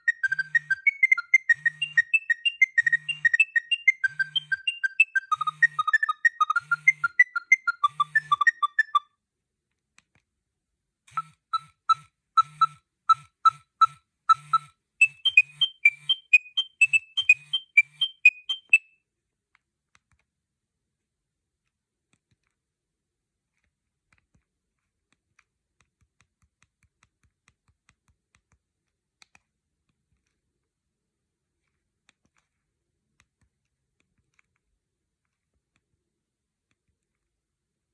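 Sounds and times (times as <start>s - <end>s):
monophonic ringtone beeping: 0.0s - 9.0s, 14.3s - 18.8s.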